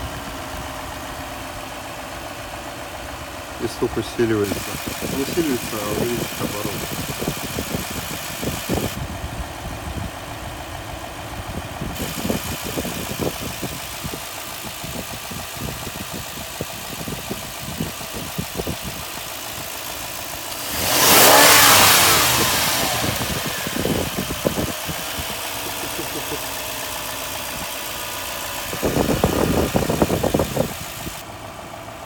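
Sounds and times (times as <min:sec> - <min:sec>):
car engine idling: 0:00.0 - 0:32.0
engine revving: 0:03.7 - 0:09.0, 0:17.9 - 0:31.2
irregular engine knocking: 0:04.5 - 0:09.0.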